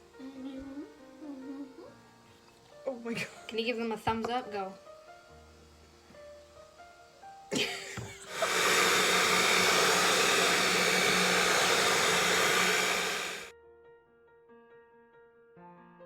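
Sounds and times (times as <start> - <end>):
electric mixer whirring: 8.1 - 13.5.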